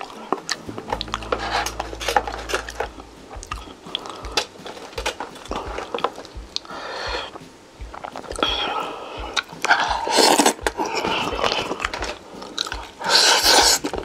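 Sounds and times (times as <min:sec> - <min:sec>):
crispy food crackling while eaten: 0:09.4 - 0:14.0.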